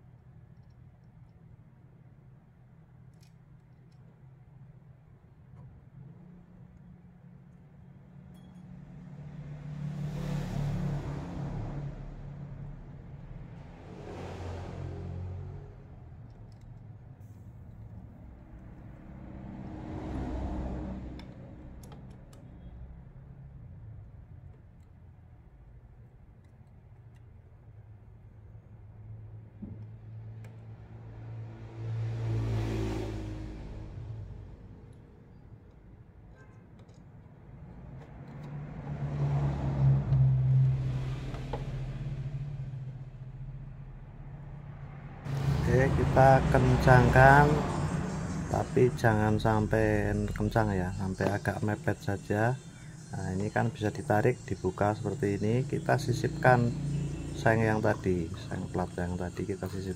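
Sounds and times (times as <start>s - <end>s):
low vehicle rumble: 8.8s - 24.4s, 37.4s - 59.9s.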